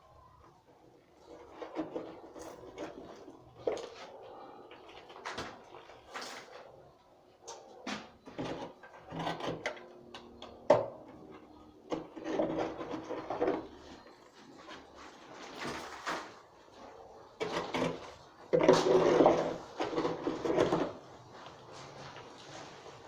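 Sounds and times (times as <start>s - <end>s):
scraping and rubbing in fireplace: 1.0s - 6.9s, 11.1s - 23.0s.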